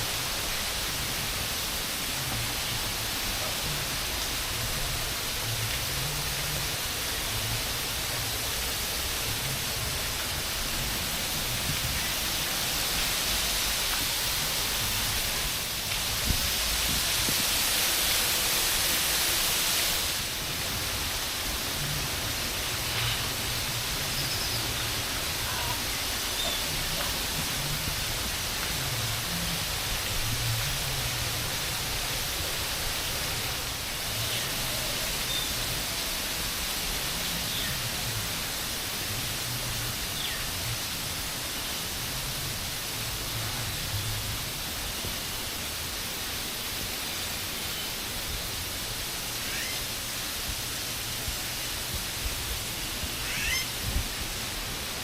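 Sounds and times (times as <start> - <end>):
rushing water: 0.0 - 55.0
faint bird chirps: 25.5 - 26.8, 49.4 - 49.9, 53.2 - 53.7.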